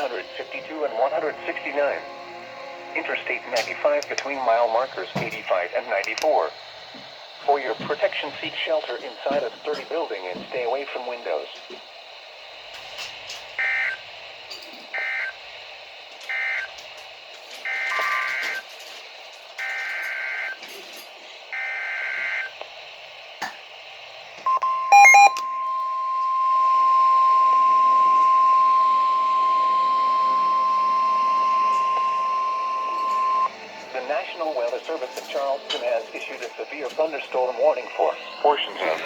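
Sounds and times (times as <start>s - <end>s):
radio crackle: 0.0s - 2.1s, 3.0s - 26.5s, 27.2s - 39.0s
steady warning alarm tone: 0.0s - 5.2s, 13.6s - 14.0s, 15.0s - 15.4s, 16.2s - 16.8s, 17.6s - 18.6s, 19.6s - 20.6s, 21.5s - 22.6s, 24.5s - 35.9s.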